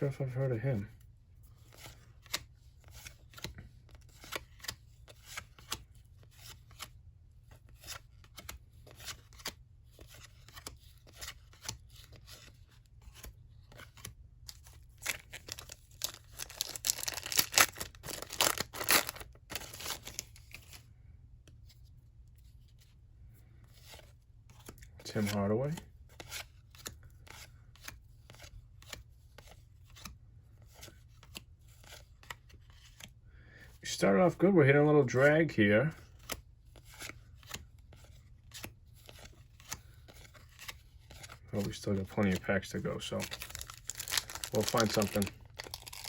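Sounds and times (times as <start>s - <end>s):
card pack ripped open: 15.1s - 20.2s, 43.2s - 46.0s.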